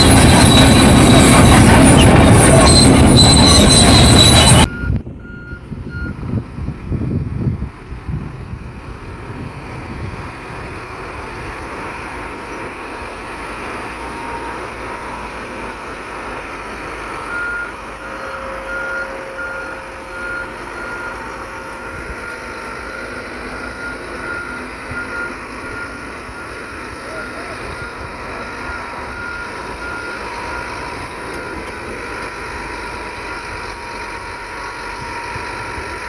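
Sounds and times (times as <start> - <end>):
reversing alarm beeping: 0.0 - 6.2, 17.1 - 32.3
diesel engine running: 0.0 - 36.0.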